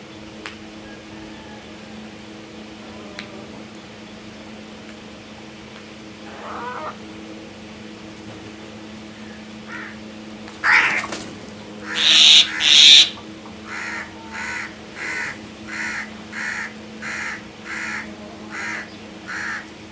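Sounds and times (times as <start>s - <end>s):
crows cawing: 9.6s - 11.1s, 11.8s - 19.7s.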